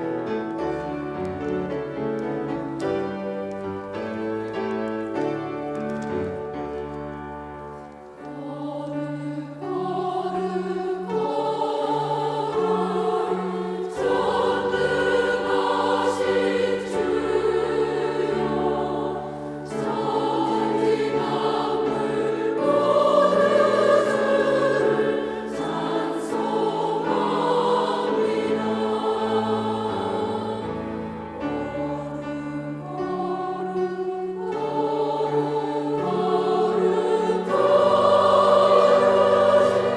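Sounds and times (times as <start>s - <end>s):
choir singing a hymn: 0.0s - 39.9s
keyboard accompaniment: 0.0s - 39.9s.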